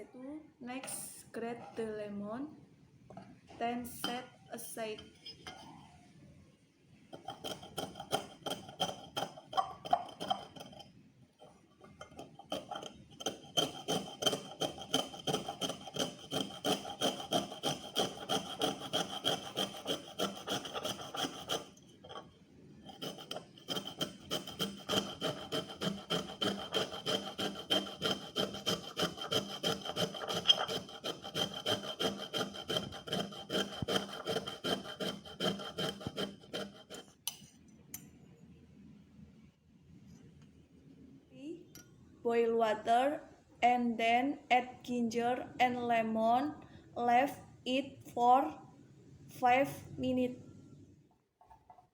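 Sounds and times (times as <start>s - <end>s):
lemon scraped on hand grater: 7.2s - 10.9s, 12.0s - 22.2s, 22.9s - 37.2s.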